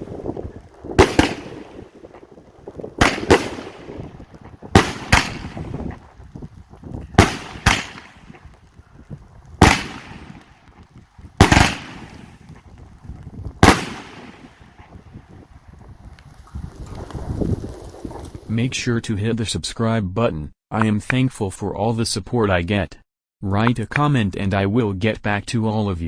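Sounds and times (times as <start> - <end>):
fireworks bangs: 0.0 - 19.1.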